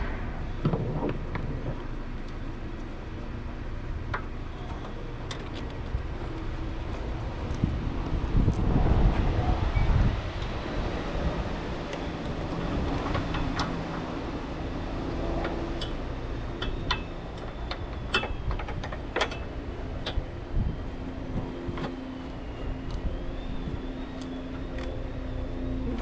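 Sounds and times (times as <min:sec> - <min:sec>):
steady background hum: 0:00.0 - 0:26.0.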